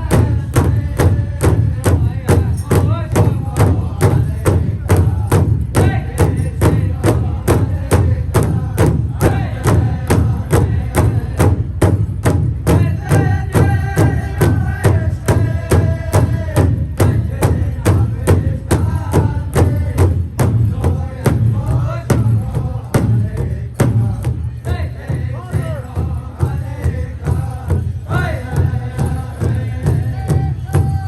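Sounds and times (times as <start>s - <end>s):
group of singers chanting: 0.0s - 12.0s, 12.7s - 31.0s
large hand drum beats: 0.0s - 31.0s.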